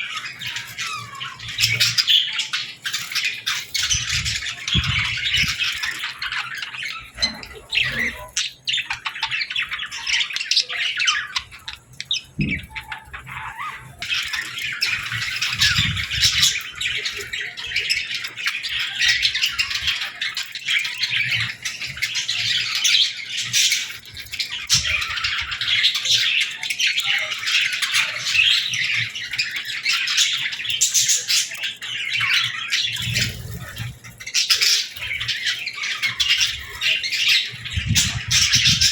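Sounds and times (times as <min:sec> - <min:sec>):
small birds chirping and chattering: 0:00.0 - 0:38.9.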